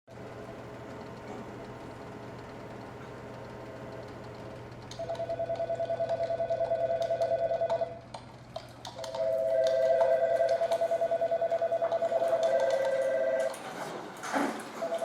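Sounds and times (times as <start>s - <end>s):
telephone ringing with warbling trill: 5.0s - 8.0s, 9.0s - 13.6s, 14.8s - 15.0s.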